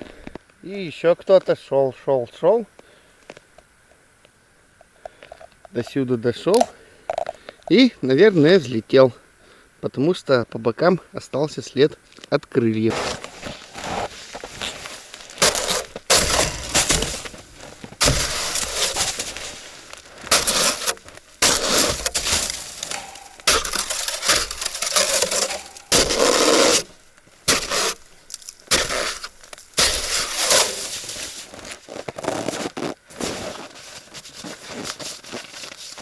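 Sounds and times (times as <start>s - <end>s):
footsteps crunching through snow: 12.8s - 36.0s.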